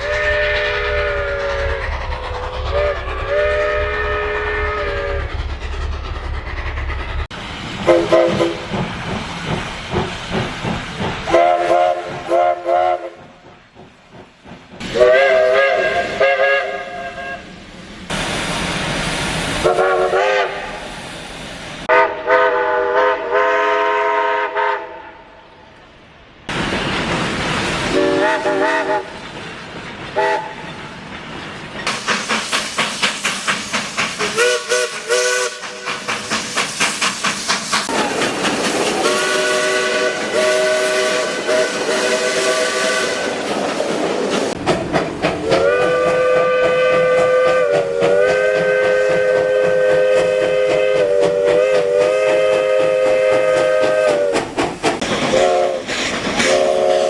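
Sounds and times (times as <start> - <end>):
steam chime whistle blasts: 0.0 - 2.0, 2.6 - 5.3, 34.2 - 35.9
locomotive exhaust chuffs: 0.0 - 20.9, 26.5 - 43.4, 44.2 - 57.0
steady steam hiss: 0.0 - 57.0.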